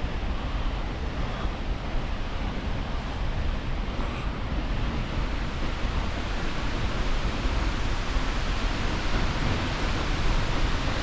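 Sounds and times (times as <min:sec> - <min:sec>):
waterfall roaring: 0:00.1 - 0:11.0.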